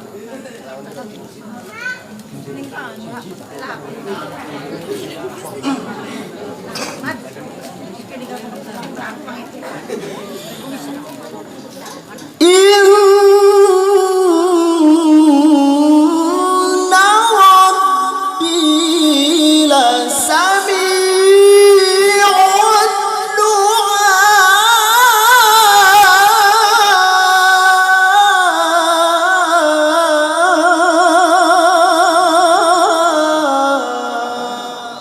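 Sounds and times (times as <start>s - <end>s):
person chanting melodic recitation: 12.4s - 35.0s.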